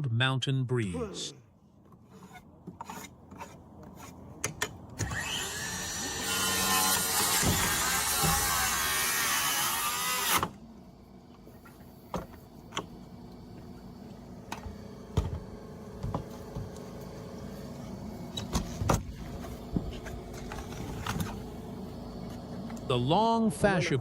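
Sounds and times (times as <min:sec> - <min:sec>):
power saw cutting timber: 0:05.0 - 0:10.6
knocks of wood and tools: 0:07.1 - 0:08.5, 0:14.5 - 0:16.8.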